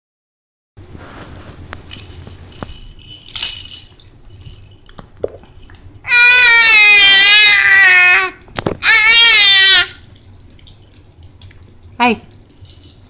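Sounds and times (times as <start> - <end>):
rattle toy shaken: 1.9 - 5.7, 12.4 - 13.0
baby squealing: 6.1 - 10.0.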